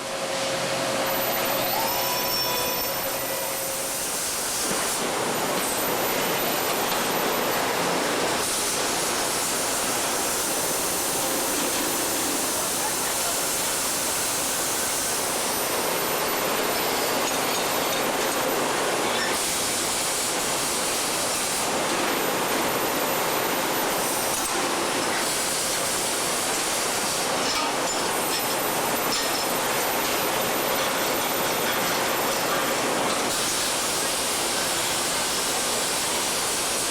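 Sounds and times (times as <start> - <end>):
faint high whine: 0.4 - 4.2.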